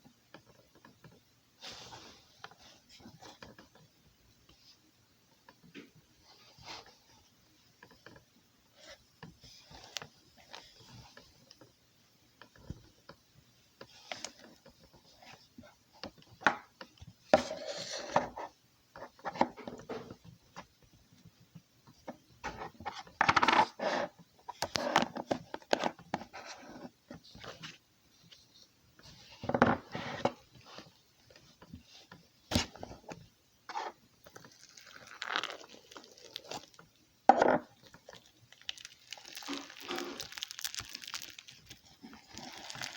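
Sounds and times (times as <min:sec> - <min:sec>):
slime squishing by hand: 0:33.7 - 0:36.8, 0:37.7 - 0:42.9.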